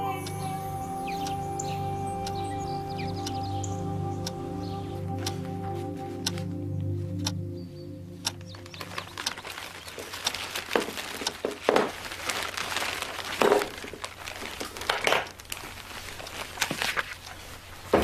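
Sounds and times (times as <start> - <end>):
rustling crinkling handling noises: 8.3 - 18.0.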